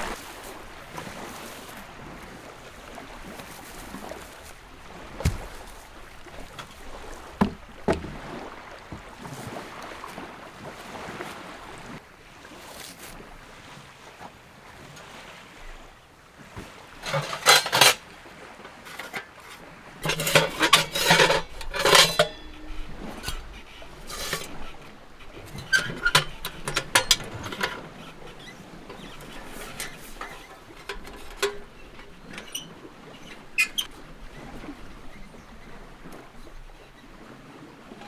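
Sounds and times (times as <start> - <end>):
hard objects clattering and knocking: 5.2 - 8.4, 16.6 - 18.0, 18.7 - 33.9.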